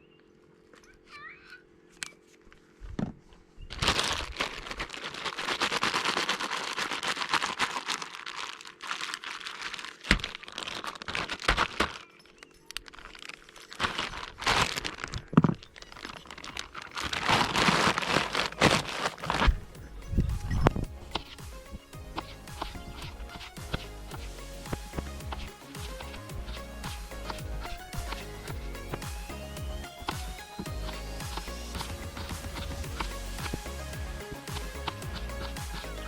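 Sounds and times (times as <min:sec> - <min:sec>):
packaging crinkling: 0:03.7 - 0:23.9.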